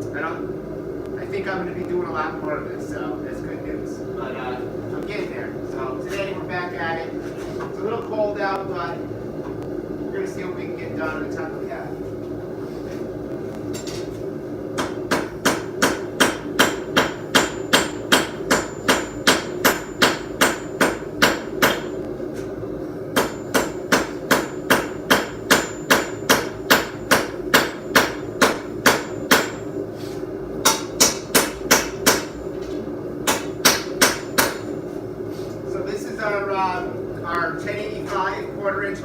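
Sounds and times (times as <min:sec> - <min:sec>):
hammer ringing on anvil: 0:15.1 - 0:22.0, 0:23.2 - 0:29.7.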